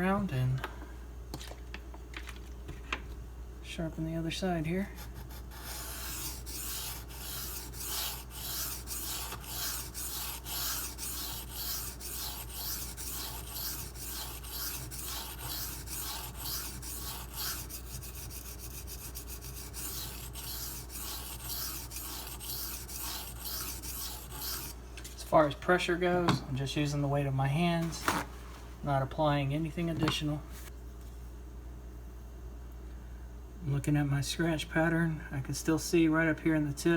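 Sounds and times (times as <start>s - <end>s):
knife scraping on whetstone: 5.0s - 24.8s.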